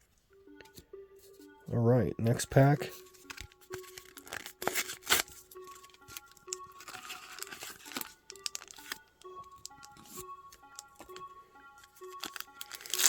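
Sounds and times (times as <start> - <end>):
soft background music: 0.0 - 13.0
foil wrapper tearing and crinkling: 3.3 - 5.3, 6.8 - 9.0, 12.2 - 13.0.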